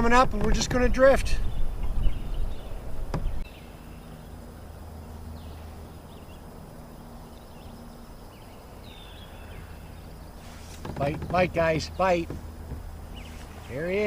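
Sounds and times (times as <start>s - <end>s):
steady low hum: 1.3s - 14.0s.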